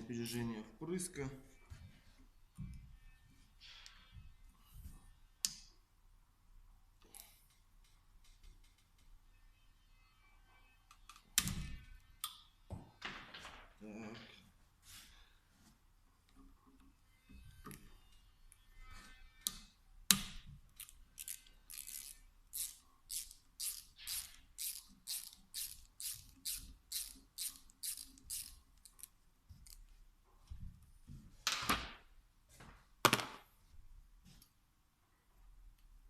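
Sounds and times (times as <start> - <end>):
ratchet wrench rasping: 20.8 - 28.6.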